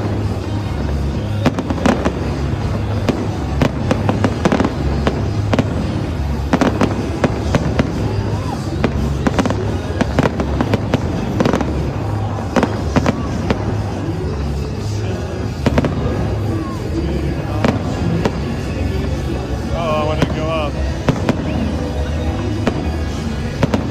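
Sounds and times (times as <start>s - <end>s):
fireworks bangs and crackling: 0.0s - 23.9s
music playing: 0.0s - 23.9s.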